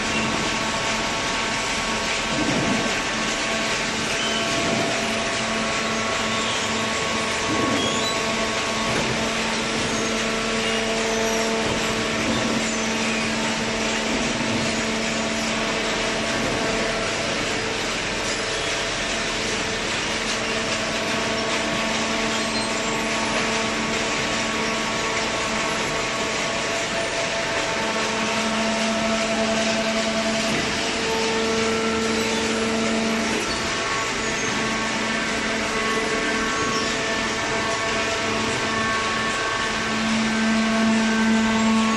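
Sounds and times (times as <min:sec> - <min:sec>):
hydraulic baler motor humming: 0:00.0 - 0:41.9
pump droning tone: 0:00.0 - 0:41.9.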